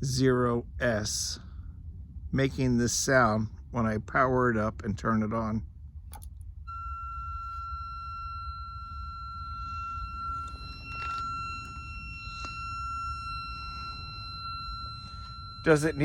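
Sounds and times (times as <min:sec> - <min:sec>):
click: 0:06.1 - 0:06.4
steady high-pitched radio tone: 0:06.7 - 0:16.0.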